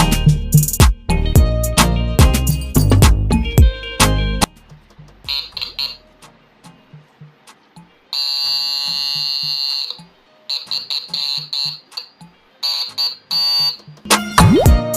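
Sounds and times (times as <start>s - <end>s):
motorcycle electric horn: 5.3s - 6.0s, 8.2s - 11.8s, 12.6s - 13.8s.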